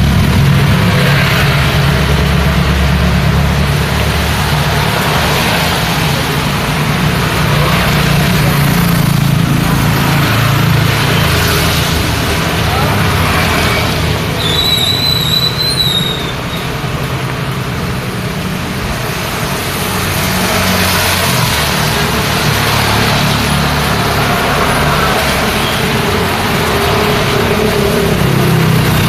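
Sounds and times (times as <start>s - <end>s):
rain and wet tyres hissing: 0.0s - 29.0s
vehicle engines rumbling: 0.0s - 29.0s
high wavering squeal: 14.3s - 16.7s.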